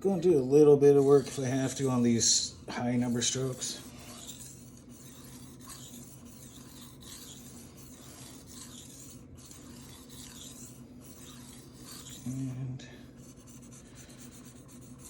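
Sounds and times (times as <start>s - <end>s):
knife scraping on whetstone: 0.1s - 12.4s.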